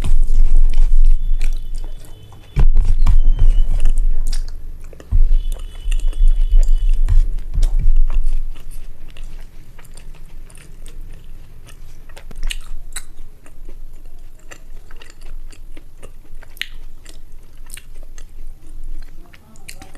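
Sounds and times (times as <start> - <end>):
chewing and mouth smacks: 0.0 - 19.9
loud low bump: 2.6 - 8.5.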